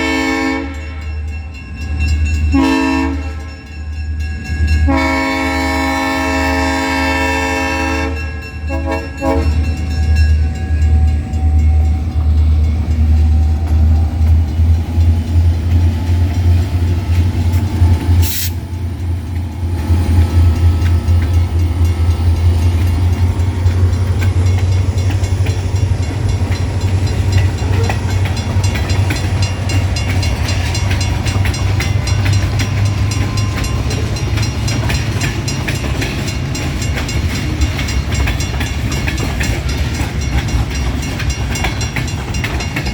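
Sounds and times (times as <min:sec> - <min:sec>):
train horn blast: 0:00.0 - 0:01.1, 0:02.5 - 0:03.6, 0:04.8 - 0:09.7
train wheels rumbling on rail: 0:00.0 - 0:42.9.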